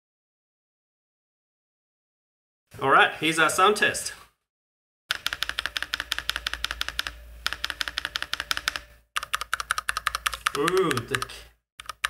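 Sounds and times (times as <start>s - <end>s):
rapid typing on mechanical keyboard: 5.1s - 12.0s.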